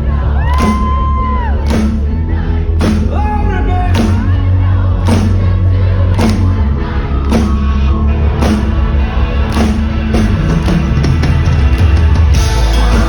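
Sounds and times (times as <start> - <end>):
drum kit beat: 0.0 - 13.0
live band playing loud music: 0.0 - 13.0.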